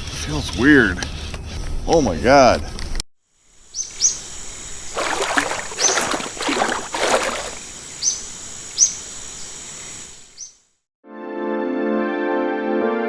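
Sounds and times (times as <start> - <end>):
water splashing: 5.0 - 7.6.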